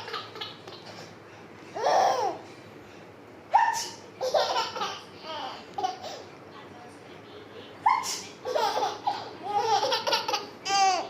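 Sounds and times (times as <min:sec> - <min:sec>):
baby laughing: 0:00.0 - 0:01.1, 0:01.8 - 0:02.4, 0:03.6 - 0:06.2, 0:07.9 - 0:11.0
pretend sneeze: 0:03.6 - 0:04.0, 0:07.9 - 0:08.4.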